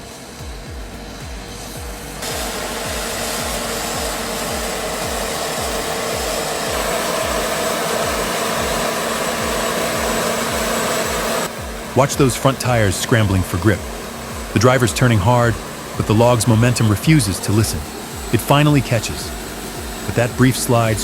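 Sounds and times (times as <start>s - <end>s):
background music with low beat: 0.0s - 21.0s
chainsaw at full throttle: 0.0s - 21.0s.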